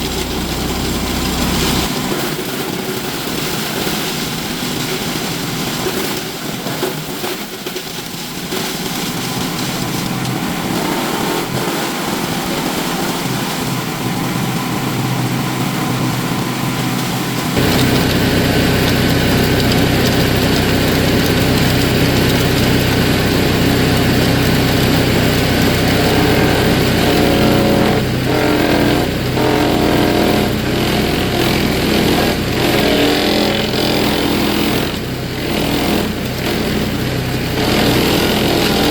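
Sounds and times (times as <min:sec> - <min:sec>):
wood chipper engine running: 0:00.0 - 0:38.9.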